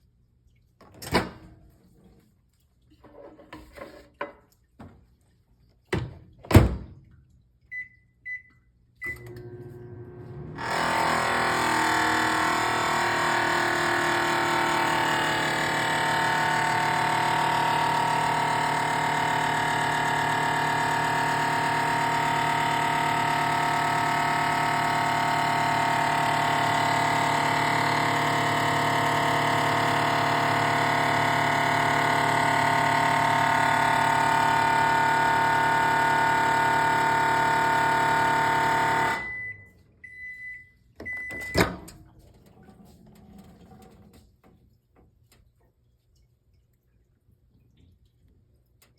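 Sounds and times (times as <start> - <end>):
short keypad beeps: 7.7 - 9.3, 39.2 - 41.6
microwave humming and whining: 9.0 - 42.2.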